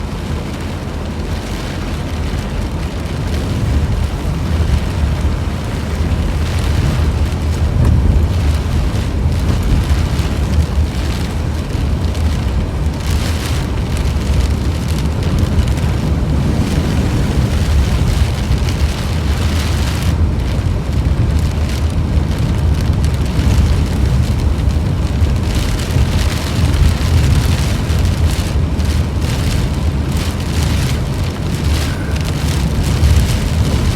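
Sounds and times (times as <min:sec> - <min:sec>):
light rain pattering: 0:00.0 - 0:33.9
loud low rumble: 0:03.5 - 0:33.9.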